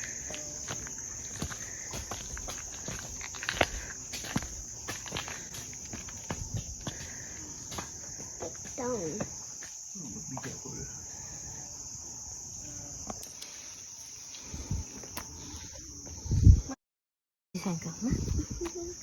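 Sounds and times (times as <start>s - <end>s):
footsteps on rock: 0.0s - 9.8s
insects droning: 0.0s - 16.8s, 17.6s - 19.0s.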